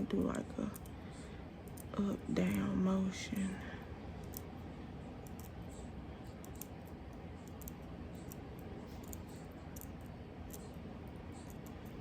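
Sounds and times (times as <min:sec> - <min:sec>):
steady background noise: 0:00.0 - 0:12.0
scissors snipping: 0:06.4 - 0:10.8.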